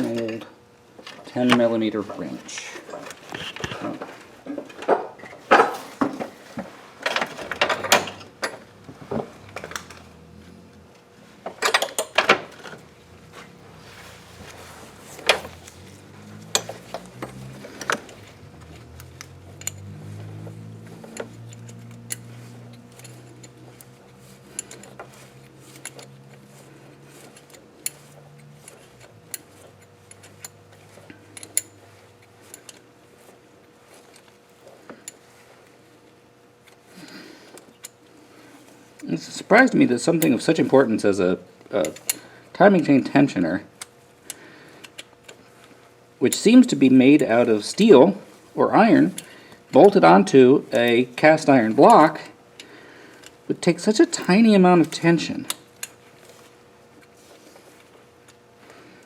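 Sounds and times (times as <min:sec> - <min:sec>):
metal tools clinking: 0:11.6 - 0:32.8.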